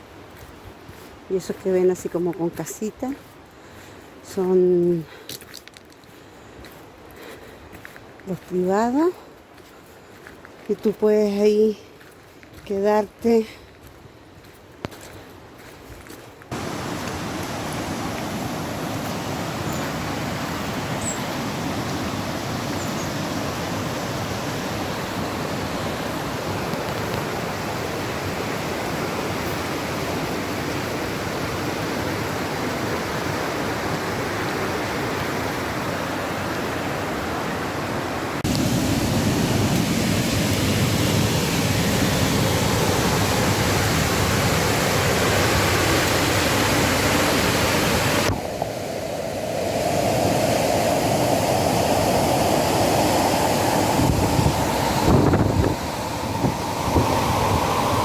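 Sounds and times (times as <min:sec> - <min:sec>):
waterfall rushing: 0:16.5 - 0:58.0.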